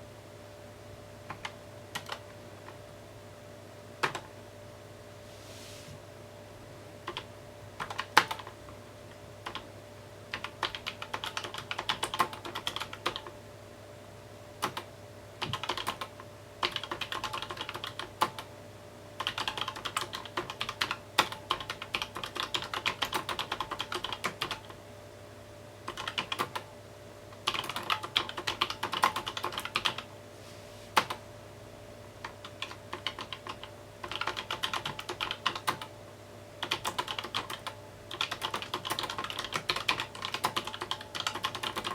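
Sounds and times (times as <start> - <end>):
faint steady hum: 0.0 - 41.9
mechanical keyboard typing: 1.3 - 2.2, 4.0 - 4.3, 7.1 - 8.6, 9.4 - 9.7, 10.3 - 13.3, 14.6 - 18.5, 19.2 - 24.8, 25.9 - 26.7, 27.4 - 30.1, 32.2 - 35.9, 36.6 - 41.9.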